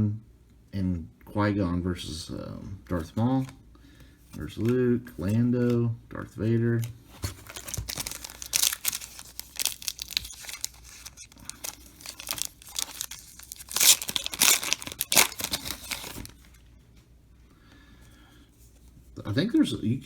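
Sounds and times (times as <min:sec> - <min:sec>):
foil wrapper tearing and crinkling: 0:07.3 - 0:16.5.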